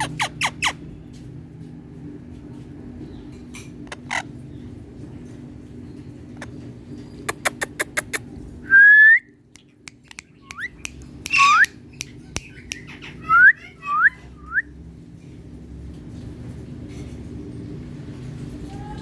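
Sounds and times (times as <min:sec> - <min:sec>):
parrot whistle: 0:10.5 - 0:11.7
parrot upward-sliding calls: 0:11.3 - 0:11.6.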